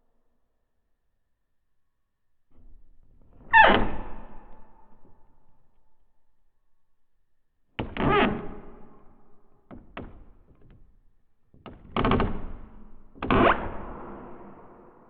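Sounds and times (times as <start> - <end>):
wooden door creaking: 2.5 - 5.4, 7.8 - 14.2.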